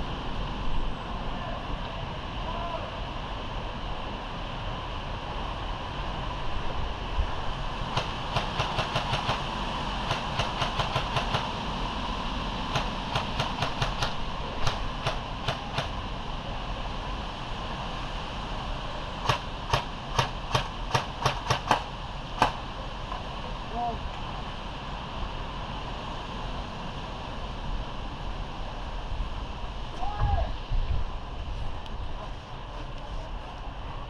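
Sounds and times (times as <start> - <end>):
steady background hiss: 0.0 - 34.0
airsoft guns firing rapidly: 8.0 - 11.5, 12.8 - 15.9.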